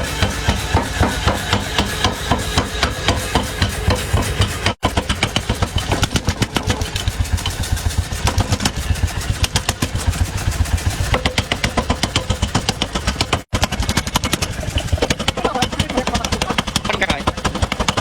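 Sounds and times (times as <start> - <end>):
motor hum: 0.0 - 18.0
power hammer blows: 0.0 - 18.0.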